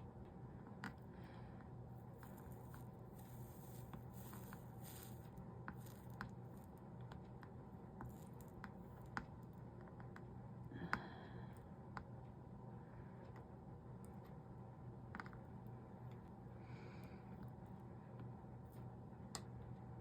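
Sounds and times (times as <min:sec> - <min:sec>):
steady low hum: 0:00.0 - 0:20.0
soldering ticks and taps: 0:04.0 - 0:11.0, 0:17.4 - 0:19.8.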